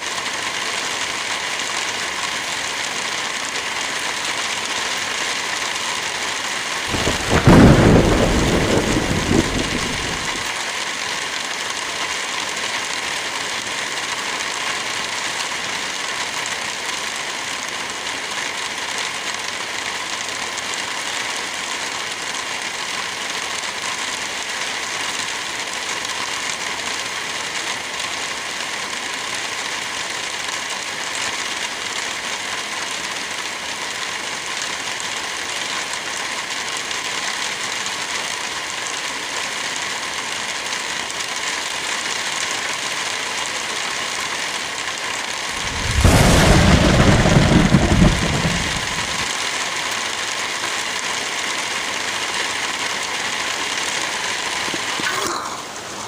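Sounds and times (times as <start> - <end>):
light rain falling: 0.0 - 56.0
wind blowing through trees: 6.9 - 10.5, 45.5 - 49.3.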